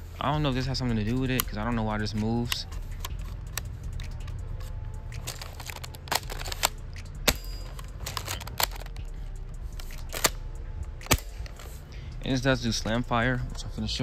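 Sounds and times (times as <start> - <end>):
steady low rumble: 0.0 - 14.0
airsoft shotgun plastic clicks: 9.8 - 10.4.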